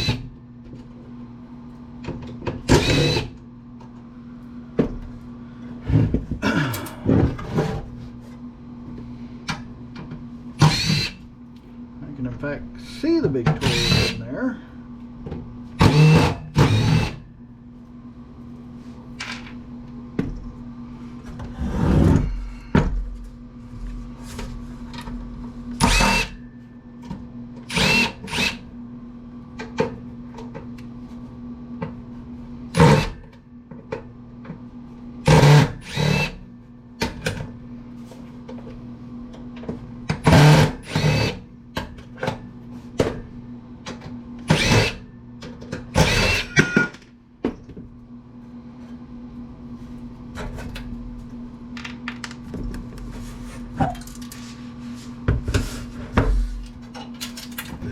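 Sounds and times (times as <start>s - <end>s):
power drill running in bursts: 2.7s - 3.3s, 10.6s - 11.2s, 13.6s - 14.2s, 15.8s - 17.2s, 25.8s - 26.3s, 27.7s - 28.6s, 35.3s - 36.4s, 40.3s - 41.4s, 44.5s - 45.0s, 46.0s - 46.6s.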